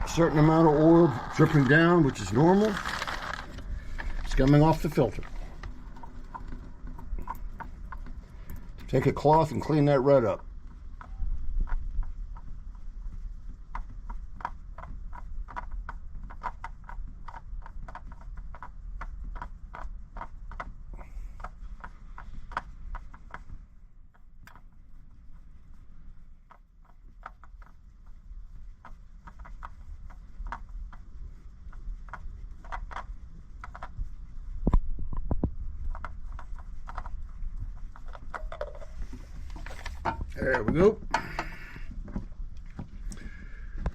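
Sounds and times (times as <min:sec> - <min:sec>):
steady low hum: 0:00.0 - 0:16.2, 0:17.1 - 0:43.9.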